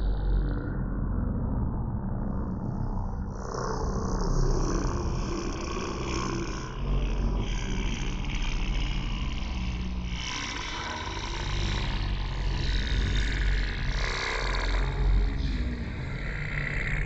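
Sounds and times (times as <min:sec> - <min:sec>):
deep rumble: 0:00.0 - 0:17.0.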